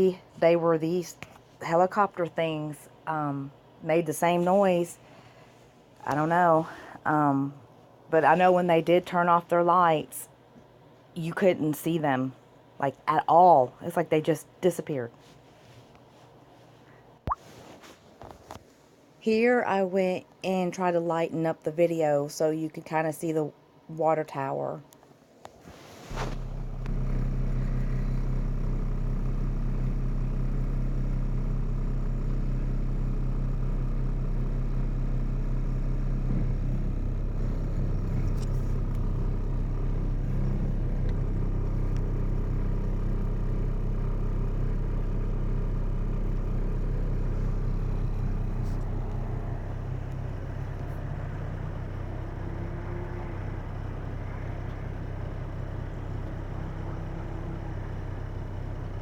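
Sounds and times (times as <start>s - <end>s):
low mechanical drone: 26.1s - 59.0s.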